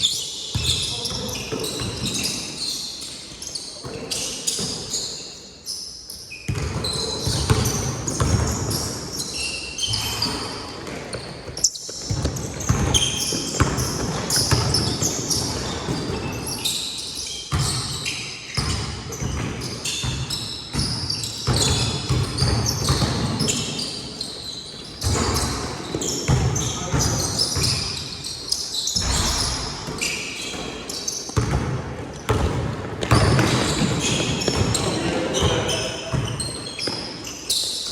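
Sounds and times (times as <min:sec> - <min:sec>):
basketball bouncing on court: 0:00.5 - 0:02.3, 0:06.5 - 0:08.9, 0:09.9 - 0:16.6, 0:17.5 - 0:23.8, 0:25.0 - 0:28.1, 0:28.9 - 0:37.0.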